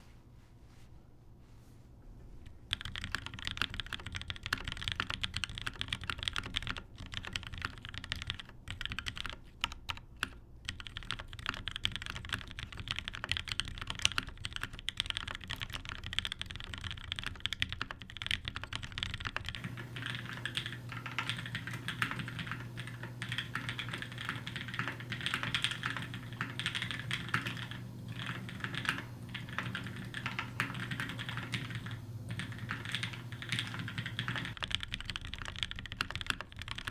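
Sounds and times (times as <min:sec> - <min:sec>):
fast typing on mechanical keyboard: 0:02.6 - 0:36.9
steady low hum: 0:19.6 - 0:34.6.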